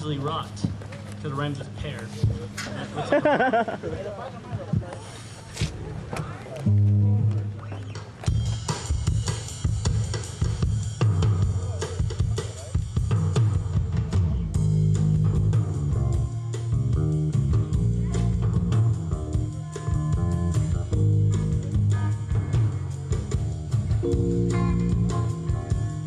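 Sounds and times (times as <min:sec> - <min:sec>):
bass guitar: 0:06.5 - 0:26.0
drum kit beat: 0:07.9 - 0:26.0
electric guitar: 0:14.3 - 0:26.0.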